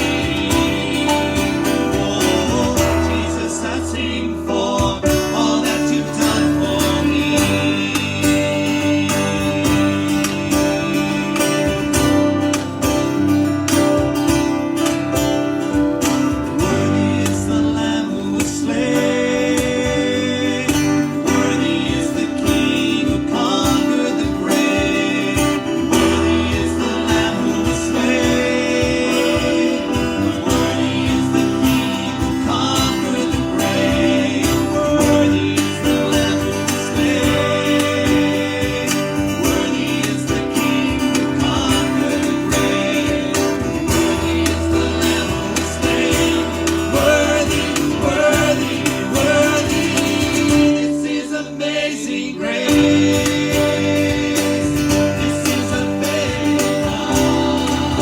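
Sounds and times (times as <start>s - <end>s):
guitar playing: 0.0s - 58.0s
person singing: 0.0s - 58.0s.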